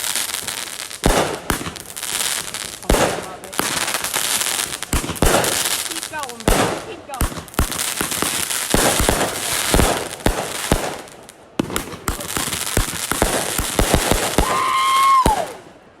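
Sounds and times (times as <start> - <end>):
crackling hiss: 0.0 - 16.0
fireworks bangs and pops: 0.0 - 16.0
whistling firework: 7.6 - 16.0.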